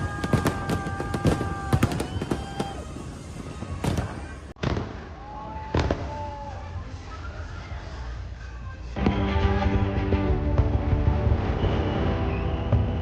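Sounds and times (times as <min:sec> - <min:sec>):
fireworks bangs: 0:00.0 - 0:06.4.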